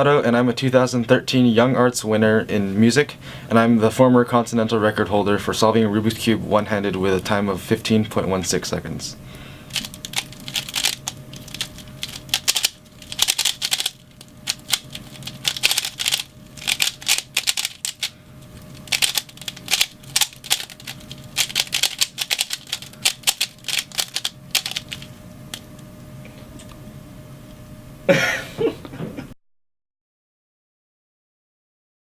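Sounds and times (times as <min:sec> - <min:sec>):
plastic puzzle cube clicking: 0:09.8 - 0:18.1, 0:18.9 - 0:25.0.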